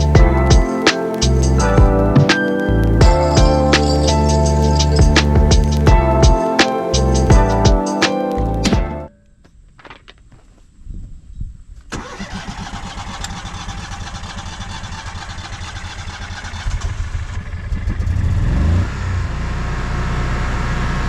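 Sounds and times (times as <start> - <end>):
generator engine cranking: 12.0 - 17.2.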